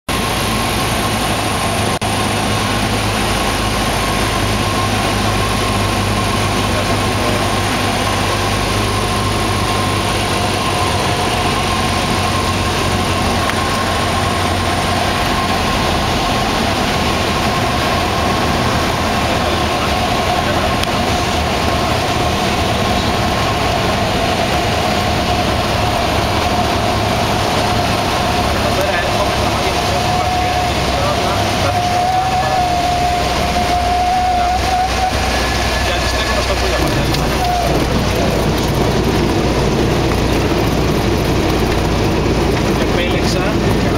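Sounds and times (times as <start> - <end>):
propeller plane engine drone: 0.1 - 43.9.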